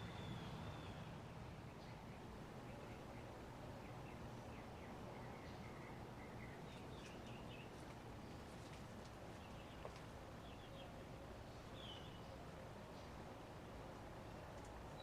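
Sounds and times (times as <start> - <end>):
small birds chirping: 0.0 - 12.4
quiet steady hum: 0.0 - 15.0.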